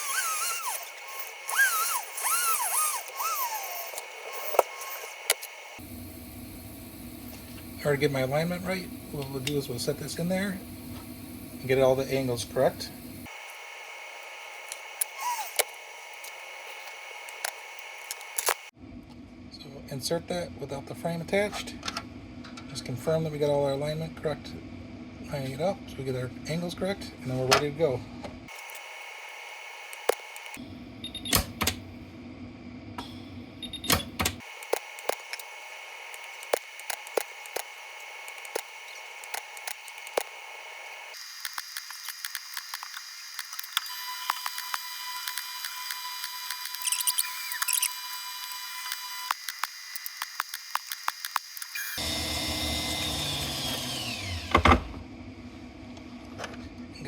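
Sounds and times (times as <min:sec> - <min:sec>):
welding machine hiss and whine: 0:00.0 - 0:18.8, 0:28.5 - 0:32.2, 0:32.8 - 0:54.5
steady hiss: 0:05.7 - 0:14.4
welding pulse clicks: 0:29.8 - 0:30.6, 0:33.6 - 0:52.0.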